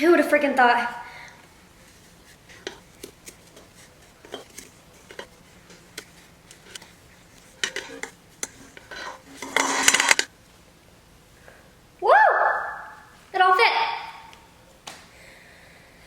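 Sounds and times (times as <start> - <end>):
scraping and shaking: 1.5 - 10.3.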